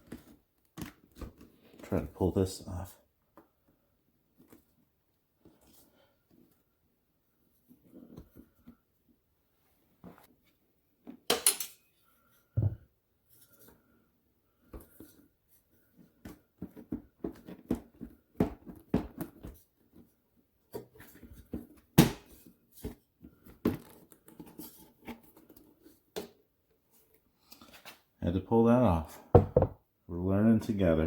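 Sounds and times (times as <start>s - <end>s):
dull thump: 29.4s - 29.8s.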